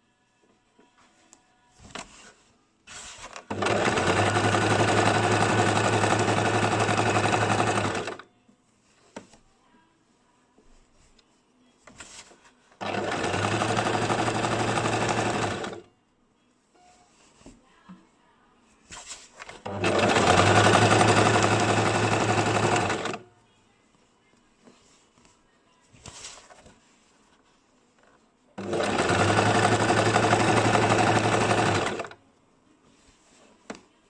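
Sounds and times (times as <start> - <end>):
sewing machine stitching: 2.9 - 8.2, 12.8 - 15.9, 19.5 - 23.2, 28.6 - 32.2.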